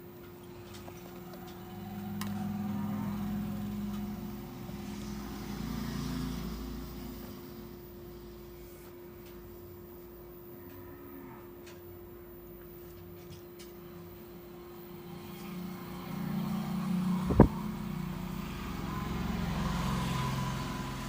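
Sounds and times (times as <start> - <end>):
low hum: 0.0 - 12.5, 14.0 - 21.0
passing vehicle engine: 0.3 - 9.2, 14.5 - 21.0.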